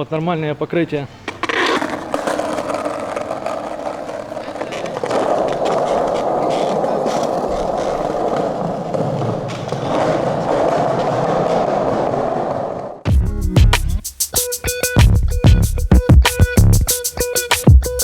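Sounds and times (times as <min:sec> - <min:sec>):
skateboard wheels rolling on pavement: 0:00.0 - 0:13.1.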